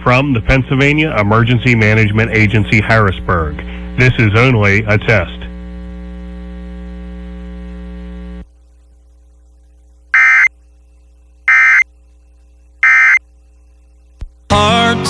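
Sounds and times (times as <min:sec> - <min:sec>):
steady buzz: 0:10.1 - 0:10.5, 0:11.2 - 0:11.8, 0:12.8 - 0:13.2
high-pitched digital data bursts: 0:10.2 - 0:10.5, 0:11.5 - 0:11.8, 0:12.8 - 0:13.2.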